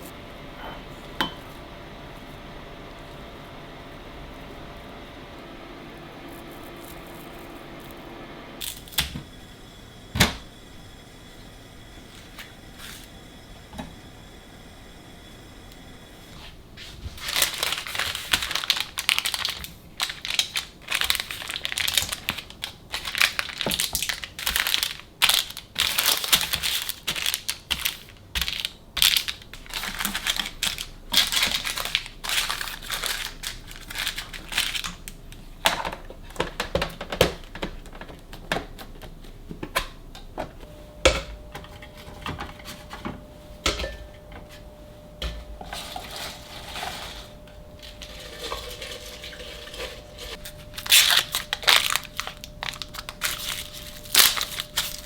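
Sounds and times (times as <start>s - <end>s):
faint steady hum: 0.0s - 55.0s
plastic packaging crinkling: 17.1s - 35.5s, 45.5s - 55.0s.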